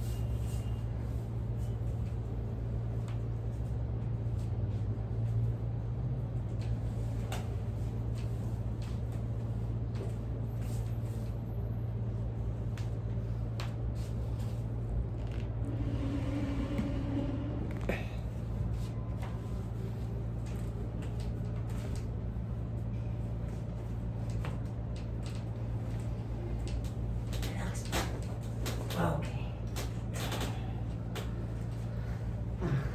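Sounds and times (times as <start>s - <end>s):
low hum: 12.6s - 24.4s.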